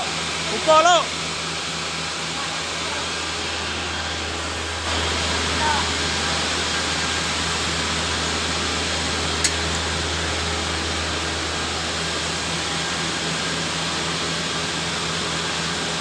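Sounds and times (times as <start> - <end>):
motor running with low hum: 0.0 - 16.0.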